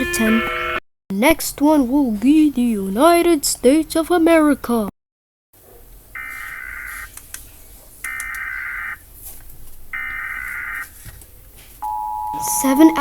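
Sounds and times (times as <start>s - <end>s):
harsh buzzy data screeches: 0.0s - 0.8s
two-tone attention signal: 0.0s - 0.8s, 11.8s - 13.0s.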